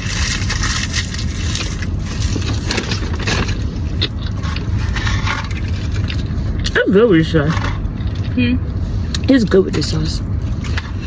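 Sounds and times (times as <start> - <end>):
crunching fast food: 0.0 - 8.3.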